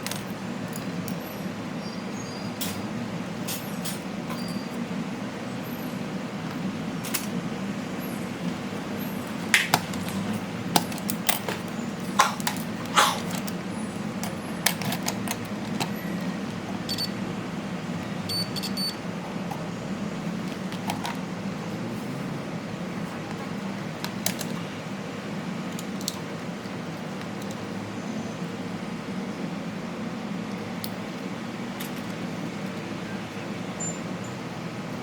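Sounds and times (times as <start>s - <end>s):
short high beeps: 16.9s - 17.2s, 18.3s - 19.0s.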